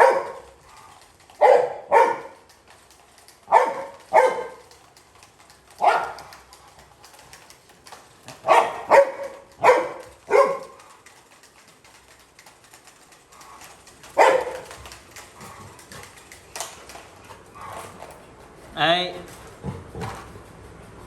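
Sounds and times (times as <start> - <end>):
puppy barking: 0.0 - 0.6, 1.4 - 2.5, 3.4 - 4.8, 5.8 - 6.4, 8.4 - 10.9, 14.1 - 14.8.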